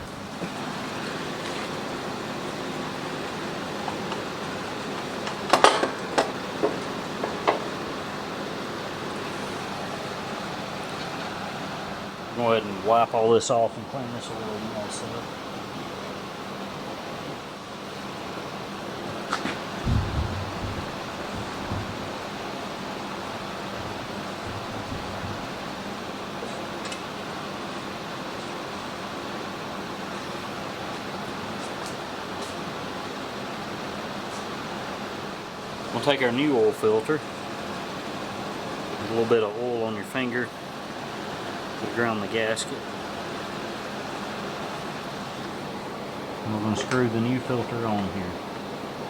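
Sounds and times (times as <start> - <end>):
steady hiss: 0.0 - 49.0
tools knocking against drain pan: 5.0 - 7.8
heavy low thumps: 19.8 - 22.4.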